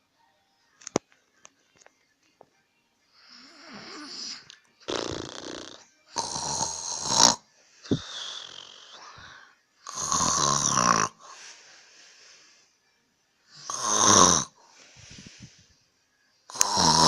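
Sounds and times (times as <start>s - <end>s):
man snoring: 3.2s - 11.4s, 13.6s - 14.6s, 16.5s - 17.0s
quiet breathing: 7.4s - 9.8s, 11.1s - 13.7s, 14.5s - 16.6s.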